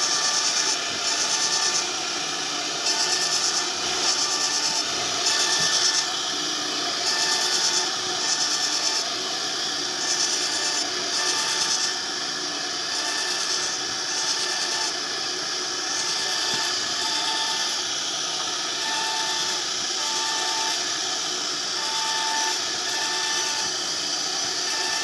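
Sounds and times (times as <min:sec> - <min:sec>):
cnc router machining: 0:00.0 - 0:25.0.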